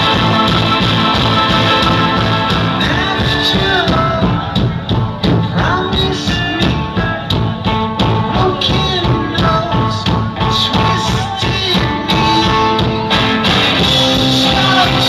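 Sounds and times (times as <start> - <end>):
drum hits: 0.0 - 5.6
person singing: 0.0 - 7.4, 8.0 - 15.0
rock band playing: 0.0 - 15.0.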